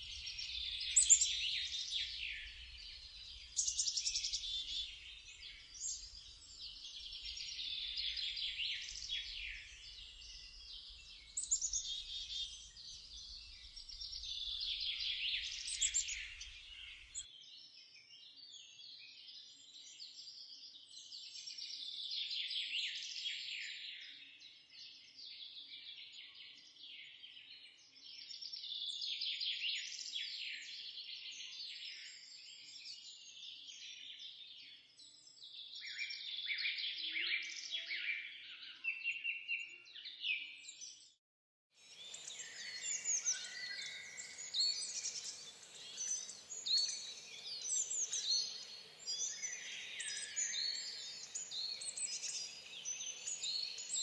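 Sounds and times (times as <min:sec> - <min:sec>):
songbirds singing and chirping: 0:00.0 - 0:17.3, 0:41.8 - 0:54.0.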